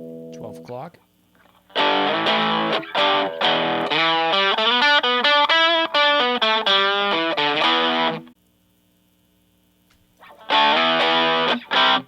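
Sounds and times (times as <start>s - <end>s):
overdriven electric guitar: 1.5s - 8.3s, 10.2s - 12.0s.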